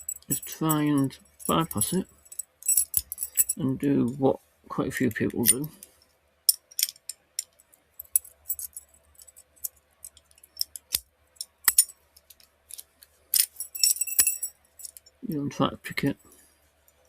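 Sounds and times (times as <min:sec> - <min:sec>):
keys and padlock clinking: 0:00.0 - 0:03.6, 0:05.4 - 0:05.8, 0:06.5 - 0:15.2.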